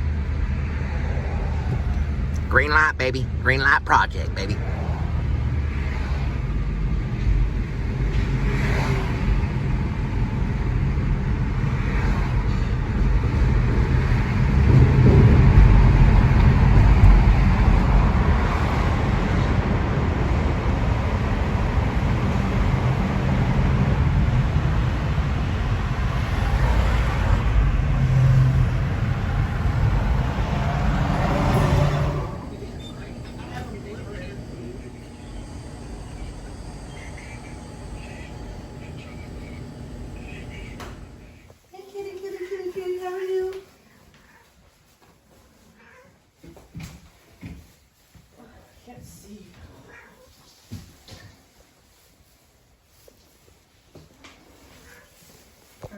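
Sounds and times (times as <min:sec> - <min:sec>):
car engine and tyre noise: 0:00.0 - 0:41.6.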